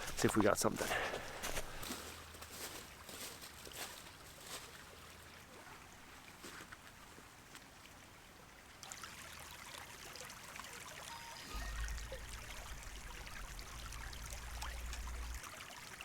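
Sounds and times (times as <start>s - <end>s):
footstep: 0.0s - 4.7s
forest stream trickling: 0.0s - 16.0s.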